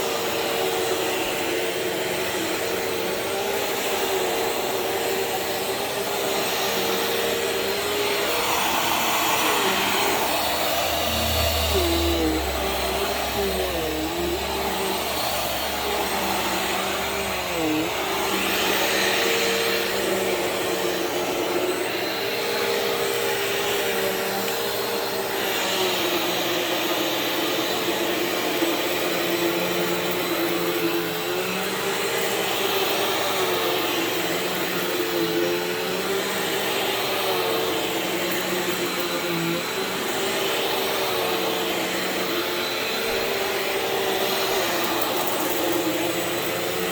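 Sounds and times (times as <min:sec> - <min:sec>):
vacuum cleaner running: 0:00.0 - 0:46.9.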